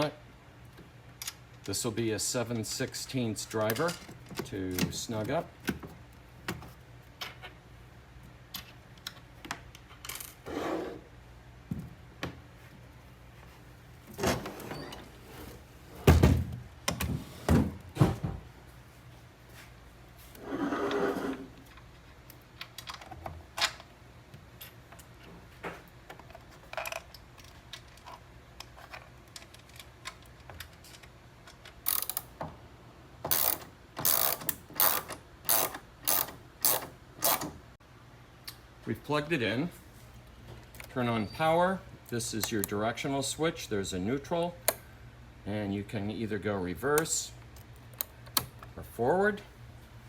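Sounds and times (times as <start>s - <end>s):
ratchet driver clicking: 31.8s - 32.3s, 33.3s - 37.5s.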